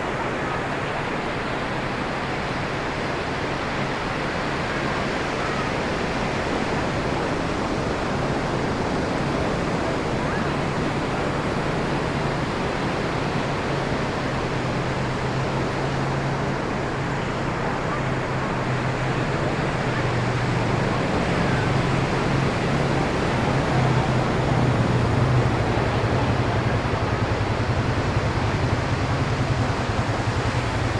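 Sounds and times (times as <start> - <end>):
ocean surf washing ashore: 0.0 - 30.9.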